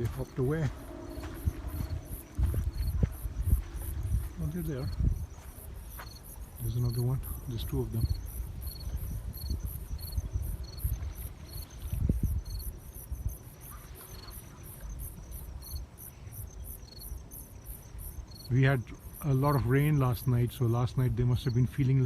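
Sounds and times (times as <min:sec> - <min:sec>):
low rumble: 0:00.0 - 0:10.6
insects chirping chorus: 0:00.0 - 0:22.0.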